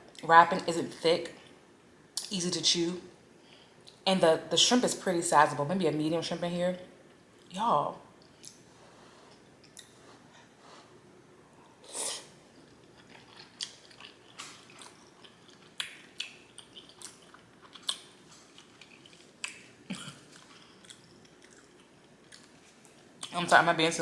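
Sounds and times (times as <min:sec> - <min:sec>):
wet chewing and lip-smacking: 0:08.2 - 0:08.7, 0:09.3 - 0:10.0, 0:12.5 - 0:23.4.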